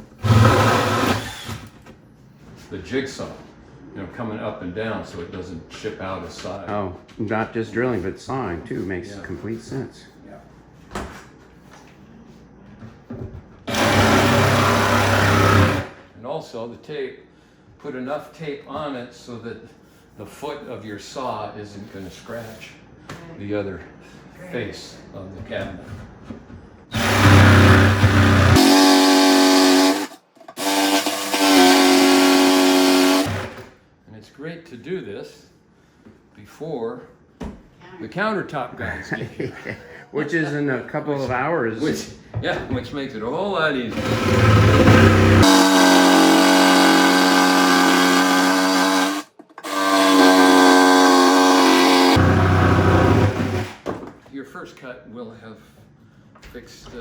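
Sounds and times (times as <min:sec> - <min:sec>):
jigsaw cutting wood: 0:00.0 - 0:01.7, 0:13.7 - 0:16.0, 0:26.9 - 0:33.7, 0:43.9 - 0:53.8.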